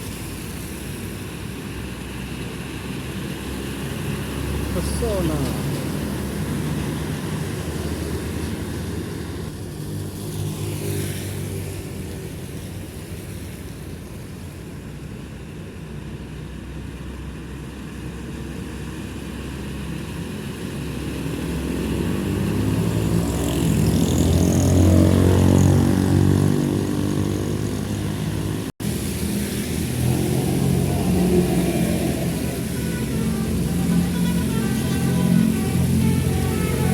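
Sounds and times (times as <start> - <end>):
trucks passing on wet road: 0.0 - 36.9.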